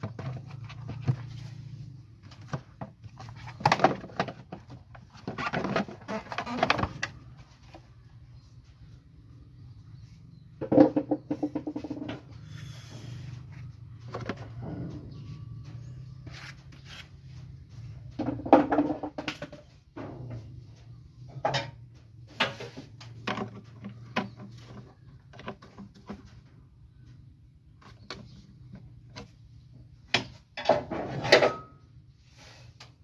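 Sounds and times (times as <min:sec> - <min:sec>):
tools and metal parts clattering: 0:02.2 - 0:07.7, 0:17.4 - 0:26.5, 0:30.1 - 0:32.0
faint low hum: 0:07.0 - 0:30.0.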